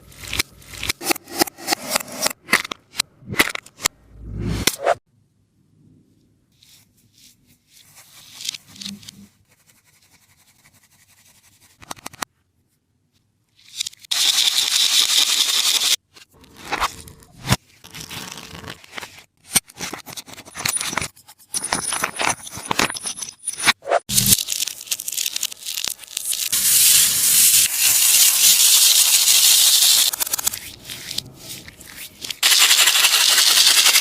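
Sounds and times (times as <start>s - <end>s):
squishy toy scraped and torn: 16.4s - 20.1s.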